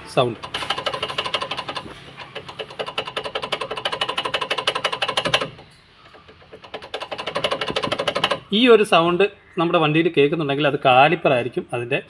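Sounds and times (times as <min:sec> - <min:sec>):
brake caliper rattling: 0:00.0 - 0:08.6.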